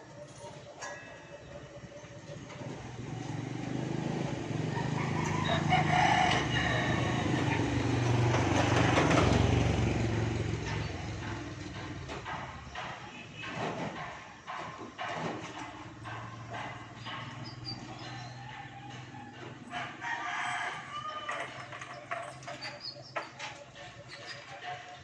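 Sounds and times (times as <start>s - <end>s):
rooster crowing: 4.4s - 8.0s, 18.1s - 21.8s.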